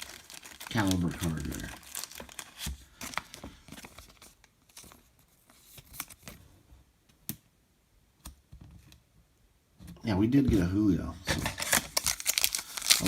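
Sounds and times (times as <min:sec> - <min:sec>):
wrapper tearing and crinkling: 0:00.0 - 0:04.8, 0:11.4 - 0:13.0
cards rustling and clicking: 0:00.0 - 0:06.4, 0:11.3 - 0:13.0.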